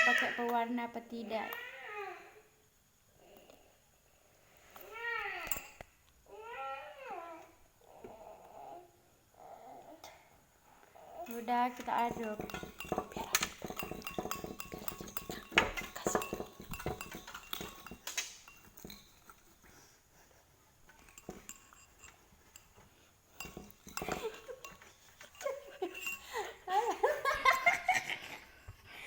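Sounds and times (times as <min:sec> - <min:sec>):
stirrer clinking against container: 0:11.3 - 0:19.8, 0:20.8 - 0:27.9
voices and giggling: 0:24.0 - 0:28.6.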